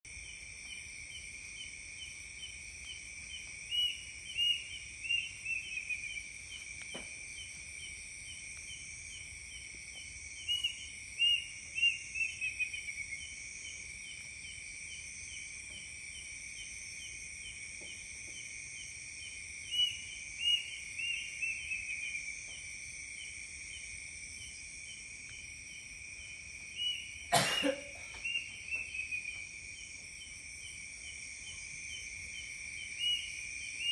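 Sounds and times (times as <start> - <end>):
insect chirring: 0.1 - 33.9
bird call: 3.7 - 6.3, 10.4 - 13.4, 26.8 - 29.4.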